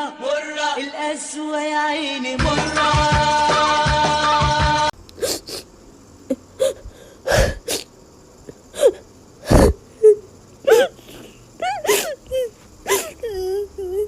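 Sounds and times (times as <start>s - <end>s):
music: 0.0s - 4.9s
sneeze-like breath bursts: 5.2s - 5.7s, 6.3s - 7.9s, 8.7s - 9.9s.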